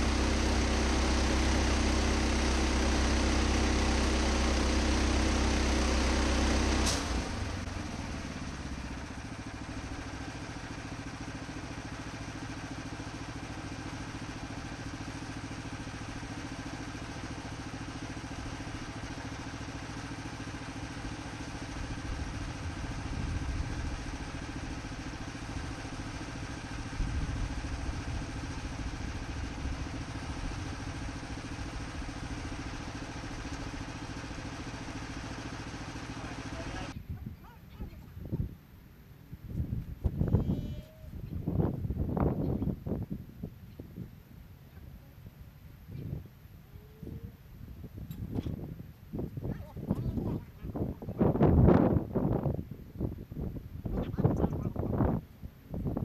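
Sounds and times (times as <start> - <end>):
motor running: 0.0 - 38.0, 39.5 - 43.0
quiet engine hum: 0.0 - 56.0.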